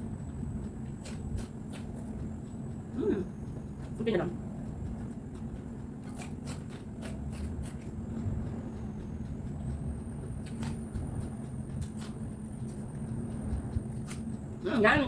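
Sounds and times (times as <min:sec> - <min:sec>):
steady low rumble: 0:00.0 - 0:15.0
person chewing crunchy vegetable: 0:00.9 - 0:02.2, 0:05.3 - 0:08.0, 0:10.4 - 0:10.9.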